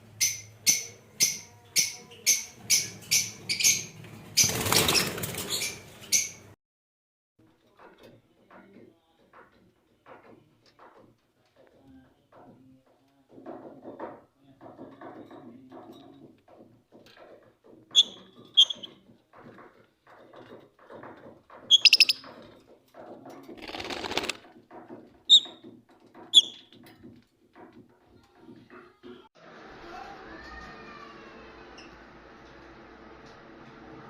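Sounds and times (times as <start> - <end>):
lovebirds chattering: 21.7 - 22.2.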